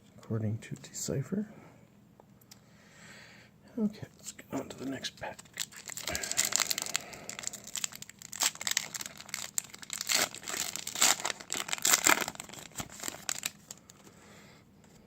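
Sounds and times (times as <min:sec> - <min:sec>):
wrapper tearing and crinkling: 0:04.7 - 0:14.1.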